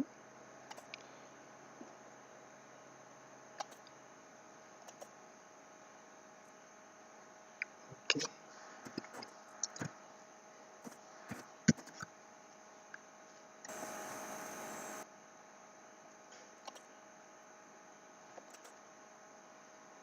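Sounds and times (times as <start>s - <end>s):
faint electrical hum: 0.0s - 20.0s
mouse and keyboard clicks: 3.6s - 3.9s.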